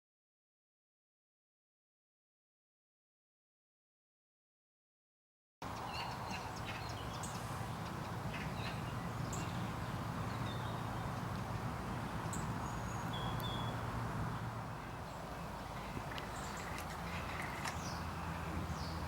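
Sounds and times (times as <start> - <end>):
high bird chirps: 5.8 - 19.0.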